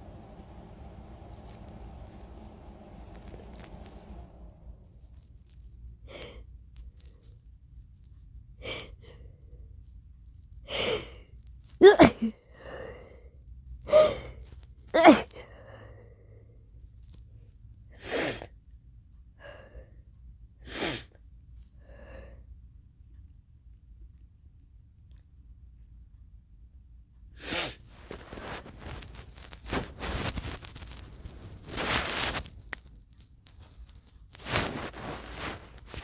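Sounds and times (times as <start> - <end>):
person sneezing: 11.8 - 12.4, 15.0 - 15.4.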